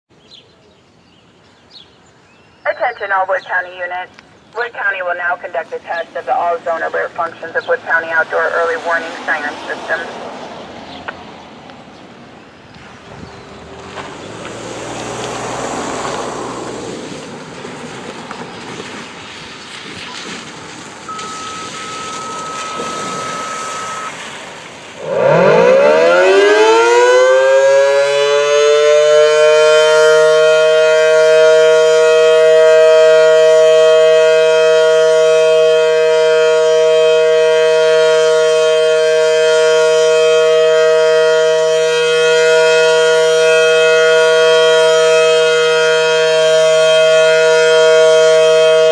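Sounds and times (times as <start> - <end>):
wind noise on microphone: 12.8 - 13.6
warning siren two-note tone: 21.1 - 24.3, 25.0 - 48.9.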